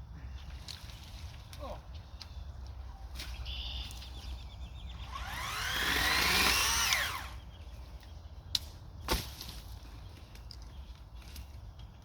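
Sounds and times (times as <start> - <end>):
electric chainsaw motor whine: 5.0 - 7.4.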